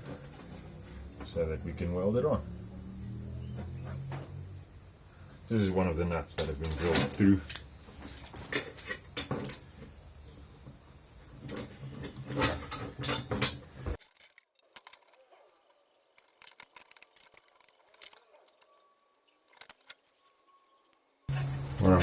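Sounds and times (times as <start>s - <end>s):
steel parts clinking together: 6.3s - 9.8s, 11.4s - 14.0s, 21.3s - 22.0s.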